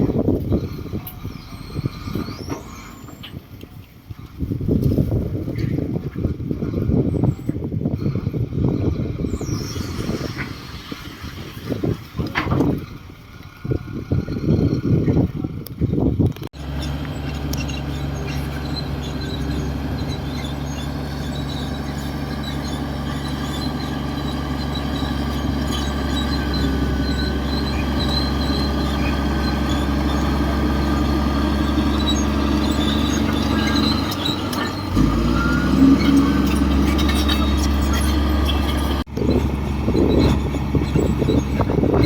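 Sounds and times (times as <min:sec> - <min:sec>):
bulldozer diesel engine running: 0:00.0 - 0:42.0.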